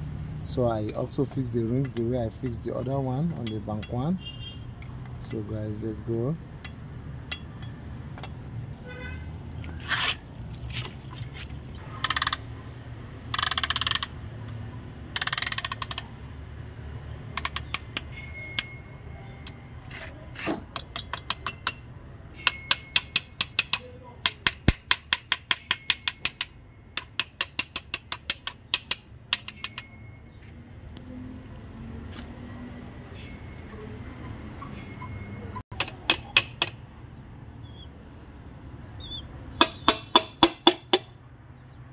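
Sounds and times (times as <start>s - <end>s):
sharp metal clicks and taps: 0.9s - 2.3s, 6.6s - 8.4s, 12.0s - 12.4s, 13.3s - 16.1s, 17.3s - 18.8s, 20.7s - 21.8s, 22.4s - 30.0s, 35.7s - 36.8s, 39.6s - 41.6s.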